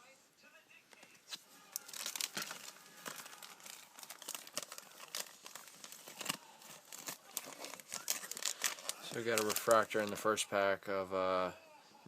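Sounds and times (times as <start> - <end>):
foil wrapper tearing and crinkling: 1.3 - 10.4.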